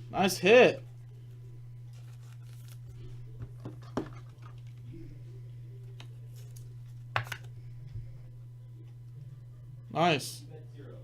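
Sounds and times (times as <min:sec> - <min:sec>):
steady low hum: 0:00.0 - 0:11.0
cards tapping and clicking: 0:06.0 - 0:07.5.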